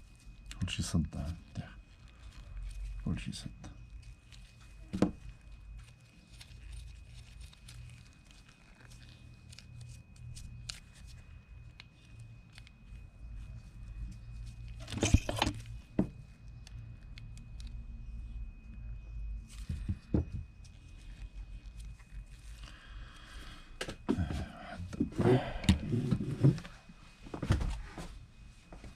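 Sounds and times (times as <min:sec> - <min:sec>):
clatter of reel parts: 0:14.7 - 0:16.0
metal clicks and scraping: 0:14.8 - 0:15.7.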